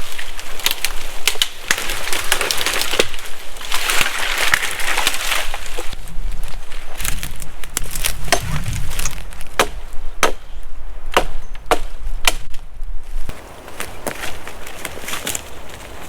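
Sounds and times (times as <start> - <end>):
blade chopping wood: 7.8 - 10.5, 11.1 - 12.6.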